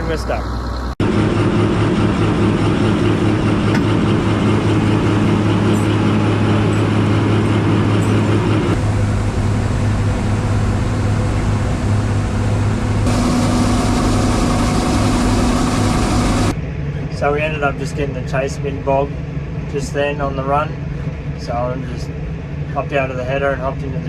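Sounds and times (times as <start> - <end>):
large diesel engine running: 0.0 - 24.0.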